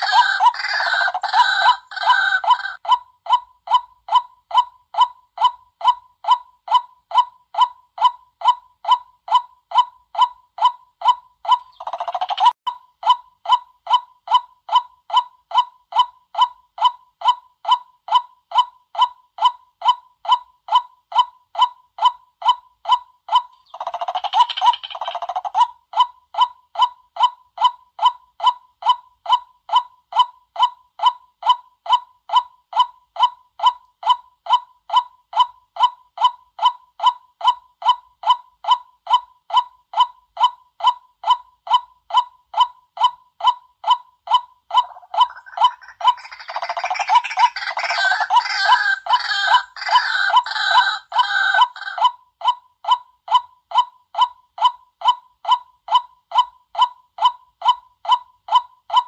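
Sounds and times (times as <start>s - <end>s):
bird clucking notes: 0.0s - 27.3s, 43.4s - 59.0s.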